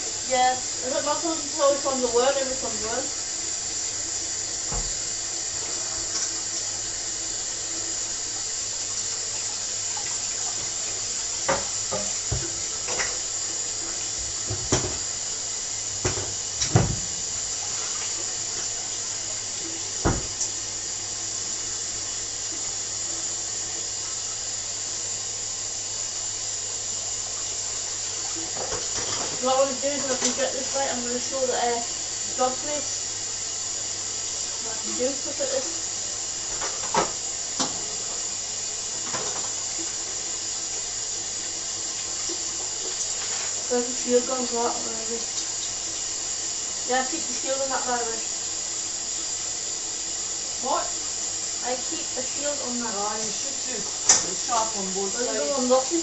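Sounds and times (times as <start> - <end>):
water running in a sink: 0.0 - 56.0.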